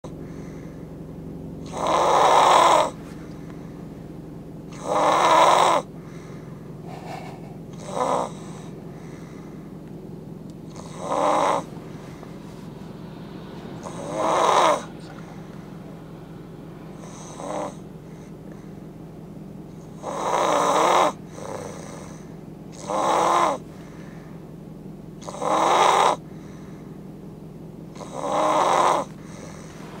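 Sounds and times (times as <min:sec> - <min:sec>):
man snoring loudly: 0:01.6 - 0:03.0, 0:04.7 - 0:05.9, 0:07.1 - 0:08.8, 0:10.7 - 0:11.7, 0:13.8 - 0:15.4, 0:16.9 - 0:17.9, 0:19.9 - 0:23.7, 0:25.2 - 0:26.3, 0:28.0 - 0:30.0.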